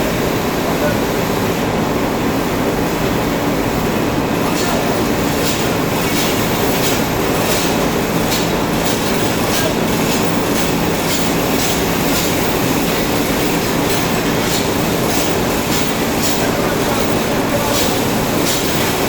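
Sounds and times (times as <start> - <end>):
textile machinery running: 0.0 - 19.0
sharp machine clicks: 4.4 - 19.0.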